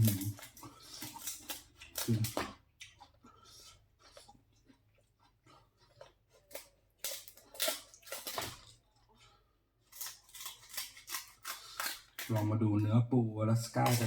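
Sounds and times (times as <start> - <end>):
seafood shells cracking: 0.0 - 2.7, 6.4 - 8.8, 9.8 - 12.8, 13.7 - 14.0
crunching and wet chewing: 0.0 - 14.0.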